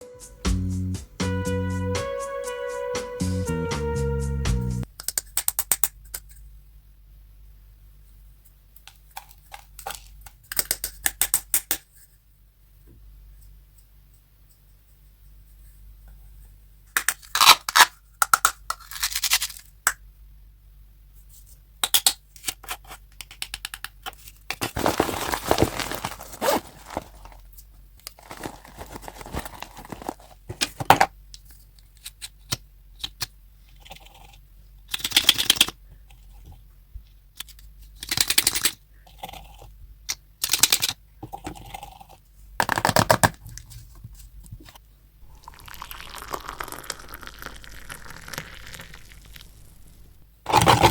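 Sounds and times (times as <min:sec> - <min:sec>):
slime crackling and popping: 0:45.3 - 0:50.6.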